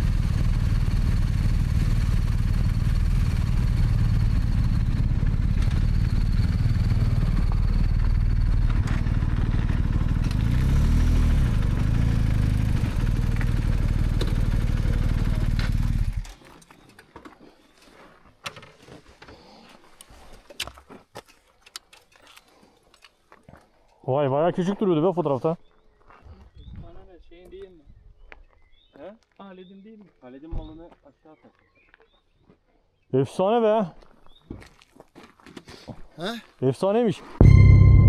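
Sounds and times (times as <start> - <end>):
motorcycle engine running: 0.0 - 16.4, 37.4 - 38.0.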